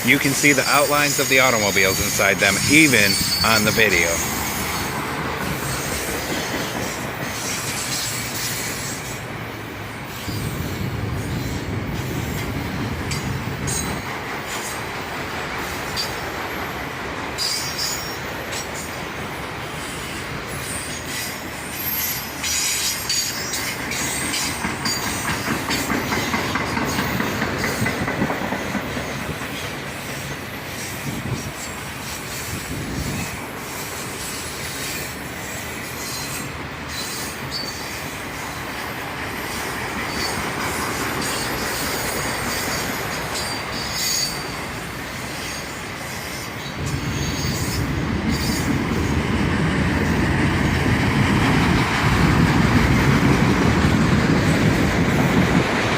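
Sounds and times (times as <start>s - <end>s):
train wheels clacking over rails: 0.0s - 55.9s
wheel squeal: 0.4s - 4.9s, 5.6s - 9.2s, 17.4s - 18.7s, 19.9s - 28.0s, 30.7s - 38.6s, 40.0s - 44.6s.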